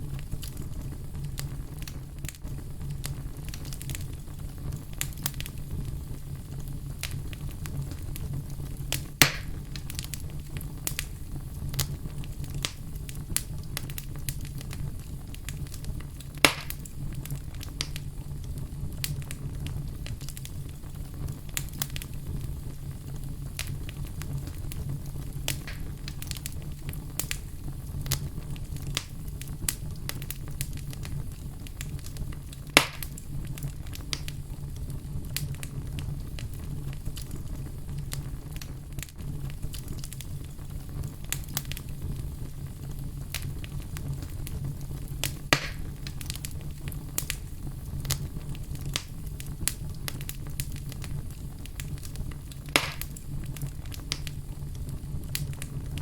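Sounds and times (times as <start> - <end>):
fireplace fire crackling: 0.0 - 56.0
sharp fire pops: 0.0 - 56.0.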